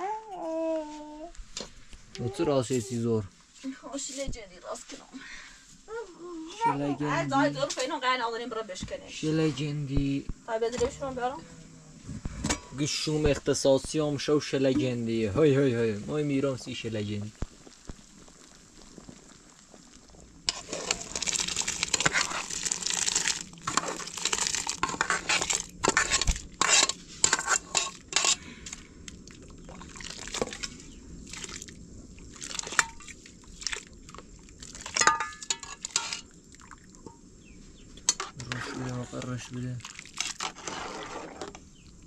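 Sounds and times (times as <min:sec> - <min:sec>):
water splashing: 0:29.2 - 0:35.6, 0:39.6 - 0:41.6
dishes clinking: 0:35.0 - 0:36.3.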